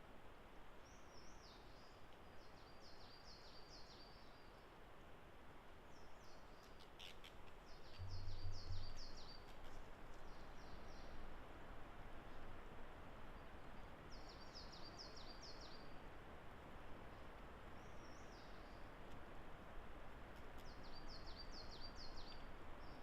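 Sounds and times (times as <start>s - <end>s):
faint woodland background: 0.0s - 23.0s
songbird singing: 0.8s - 4.8s, 5.9s - 11.4s, 13.3s - 16.0s, 17.7s - 19.0s, 20.6s - 23.0s.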